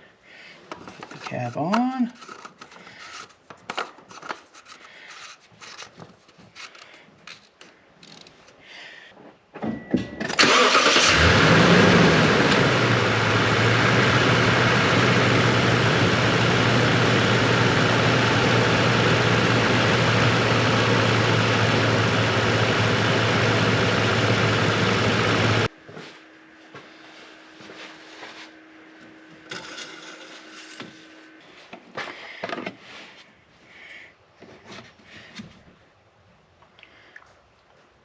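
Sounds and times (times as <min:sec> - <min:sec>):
engine starter cranking: 0:10.3 - 0:12.9
car engine idling: 0:10.4 - 0:25.7.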